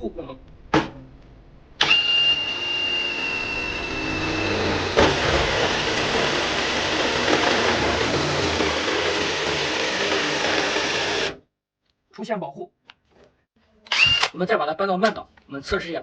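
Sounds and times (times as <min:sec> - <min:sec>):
cordless drill motor whine: 0:01.8 - 0:11.4, 0:13.9 - 0:14.3
hole saw grinding metal: 0:01.8 - 0:11.4.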